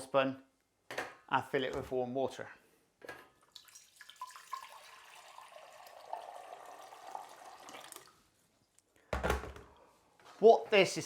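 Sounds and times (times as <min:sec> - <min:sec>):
tap water running into saucepan: 0:03.5 - 0:08.2.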